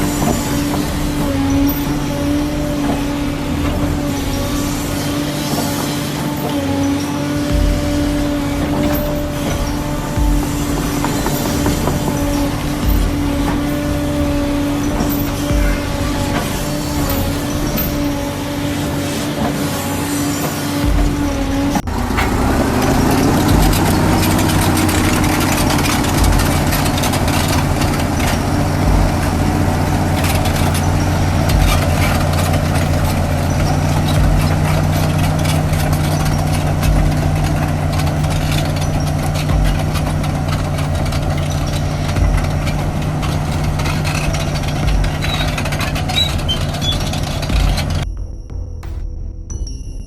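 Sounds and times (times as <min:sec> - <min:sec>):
diesel machinery running: 0:00.0 - 0:48.1
low thump: 0:07.5 - 0:18.2.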